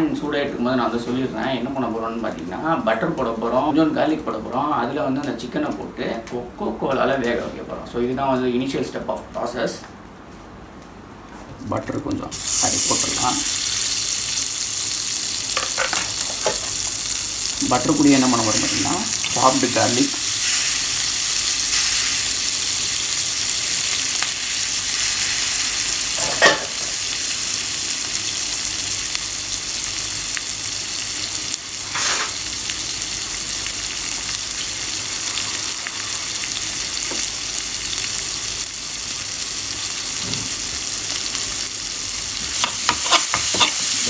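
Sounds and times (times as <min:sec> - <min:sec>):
garlic sizzling in a frying pan: 0:12.3 - 0:44.0.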